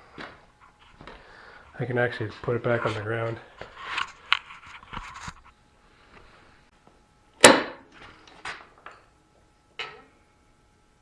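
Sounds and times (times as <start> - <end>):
loud sharp bang: 7.4 - 7.8.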